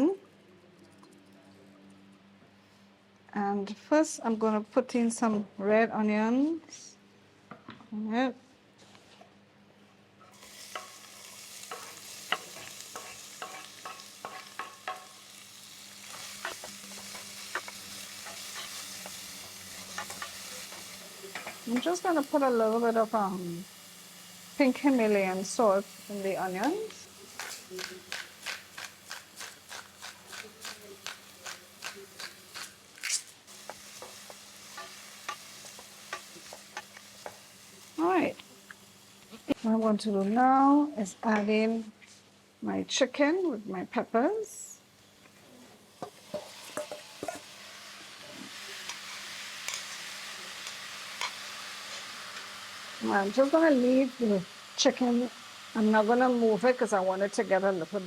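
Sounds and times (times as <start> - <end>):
onions sizzling in oil: 10.3 - 39.7, 44.4 - 58.0
utensil scraping pan: 11.7 - 15.1.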